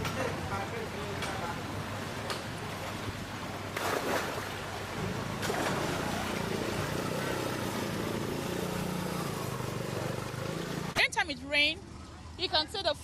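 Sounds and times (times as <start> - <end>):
wash of noise: 1.6 - 11.0.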